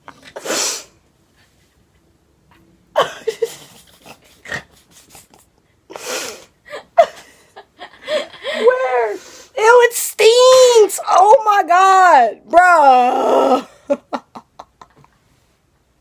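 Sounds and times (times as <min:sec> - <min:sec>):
sneeze-like bursts of breath: 0:00.3 - 0:01.0, 0:05.9 - 0:06.5.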